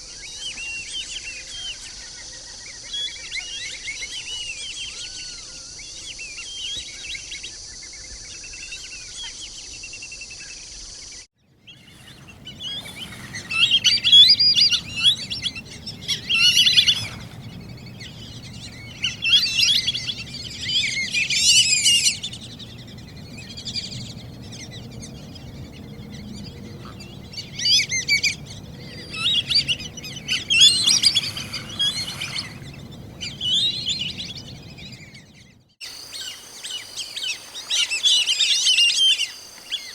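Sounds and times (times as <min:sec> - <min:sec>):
ducks whistling calls: 0:11.7 - 0:39.9
steady high hiss: 0:35.8 - 0:39.9.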